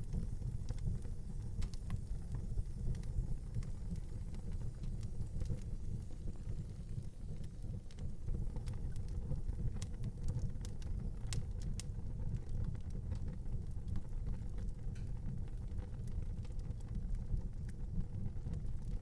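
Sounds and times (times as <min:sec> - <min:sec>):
fire crackling and popping: 0:00.0 - 0:19.0.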